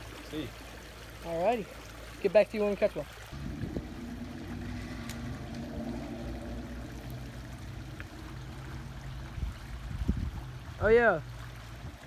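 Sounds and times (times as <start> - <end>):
creek water flowing: 0.0 - 12.0
low steady hum: 3.3 - 11.7.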